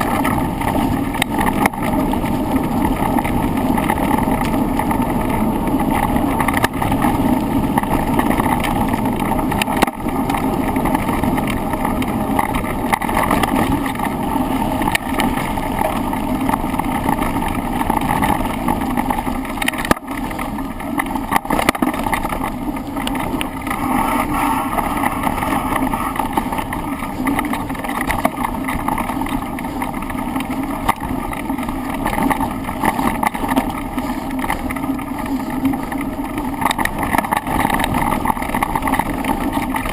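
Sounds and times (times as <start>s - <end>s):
bike rattling: 0.0s - 39.9s
wind rush: 23.3s - 27.8s.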